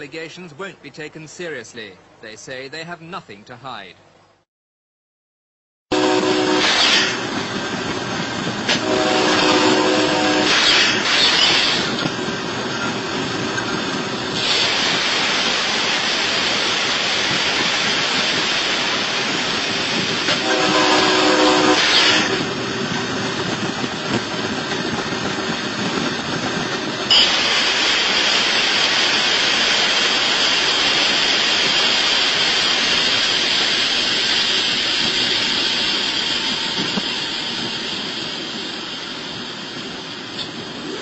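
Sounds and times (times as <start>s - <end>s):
train noise: 0.0s - 4.4s, 5.9s - 41.0s
train horn: 5.9s - 7.2s, 8.7s - 10.7s, 20.3s - 22.4s.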